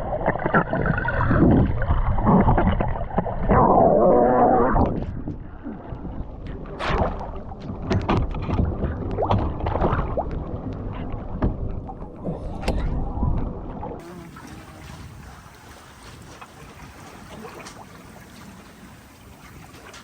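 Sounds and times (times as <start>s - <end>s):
water slapping against hull: 4.8s - 20.0s.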